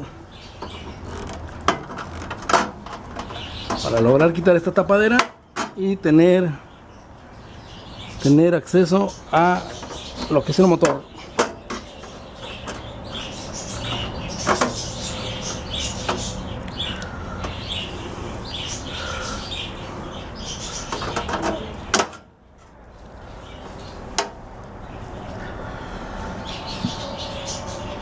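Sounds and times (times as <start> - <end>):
squeaky metal creaks: 0.0 - 5.8.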